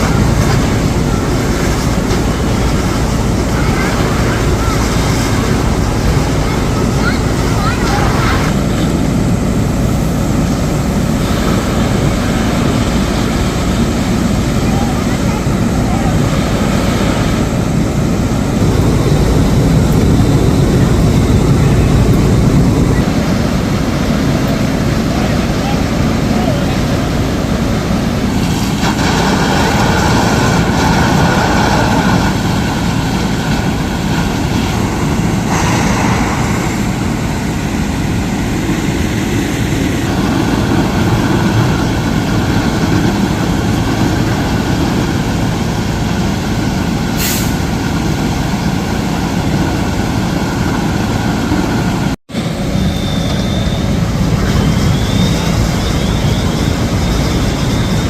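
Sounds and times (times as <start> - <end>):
diesel truck engines rumbling: 0.0 - 58.0
brief hiss: 47.2 - 47.6.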